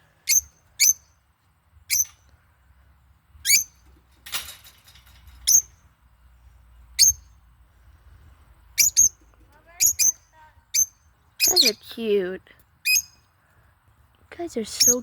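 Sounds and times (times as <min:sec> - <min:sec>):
parrot squeaky calls: 0:00.3 - 0:01.1, 0:01.9 - 0:02.2, 0:03.4 - 0:03.8, 0:05.5 - 0:05.7, 0:07.0 - 0:07.3, 0:08.8 - 0:09.2, 0:09.8 - 0:11.8, 0:12.8 - 0:13.2, 0:14.8 - 0:15.0.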